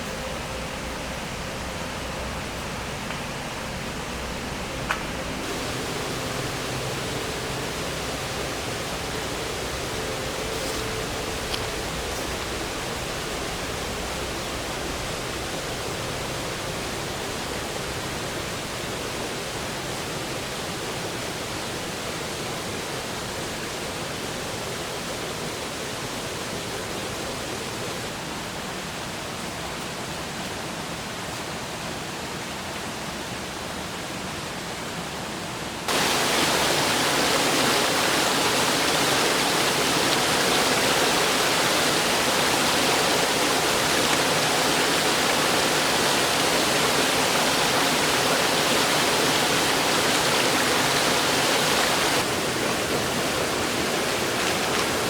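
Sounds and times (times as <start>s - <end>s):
steady rushing noise: 0.0s - 19.7s, 35.9s - 55.0s.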